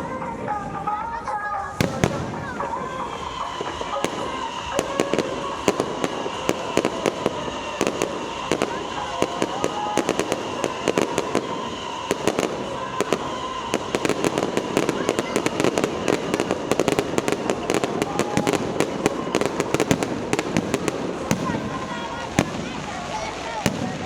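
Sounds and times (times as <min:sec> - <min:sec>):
firecrackers crackling: 0:00.0 - 0:24.0.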